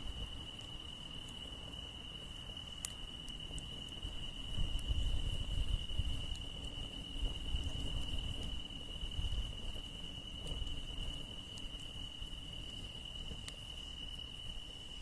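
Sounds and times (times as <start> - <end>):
campfire crackling: 0.0 - 15.0
crickets trilling: 0.0 - 15.0.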